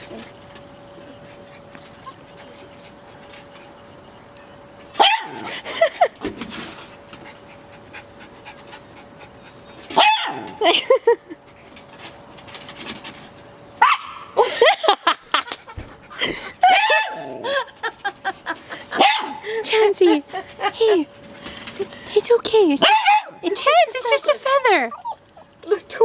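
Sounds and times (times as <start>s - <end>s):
dog barking: 5.0s - 5.4s, 10.0s - 10.5s, 13.8s - 14.3s, 16.6s - 17.2s, 19.0s - 19.4s, 22.8s - 23.4s.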